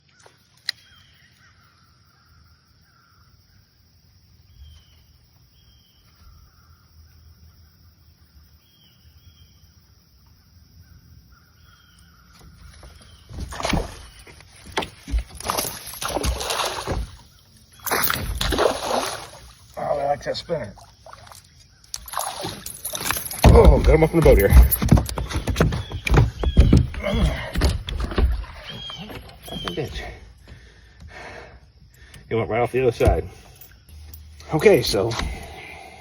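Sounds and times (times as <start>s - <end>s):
faint chirping calls: 0.0s - 15.7s, 19.3s - 36.0s
fish splashing at surface: 15.1s - 19.6s, 20.8s - 23.5s.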